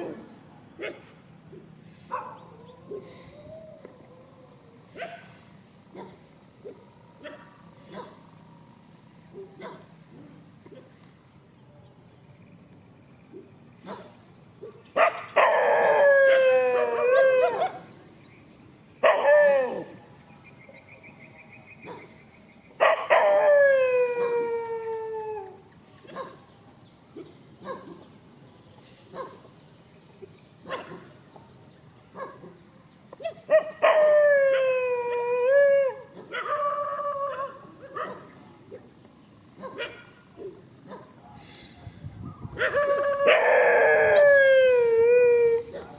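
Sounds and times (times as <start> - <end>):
dogs howling and barking: 2.1 - 8.2, 13.9 - 18.0, 19.0 - 20.1, 22.8 - 26.4, 33.2 - 38.9, 42.6 - 45.9.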